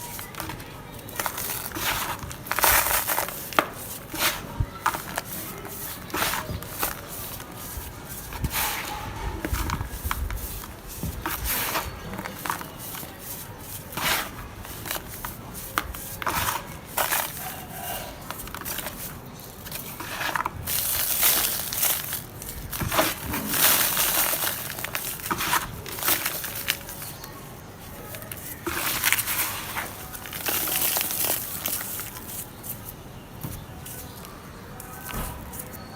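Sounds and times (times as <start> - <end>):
dry dirt crunching: 0.0 - 35.9.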